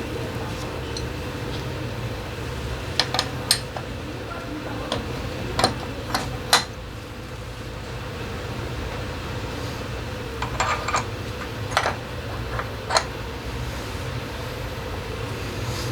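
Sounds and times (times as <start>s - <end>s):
metal tools clinking: 10.4s - 13.1s.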